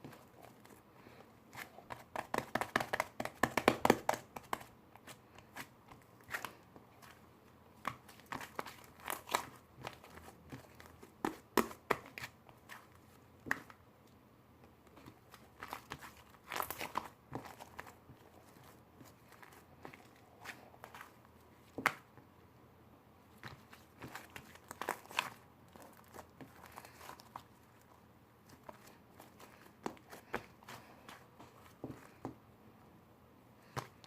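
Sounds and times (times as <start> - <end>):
crinkling and crackling: 23.4 - 32.3.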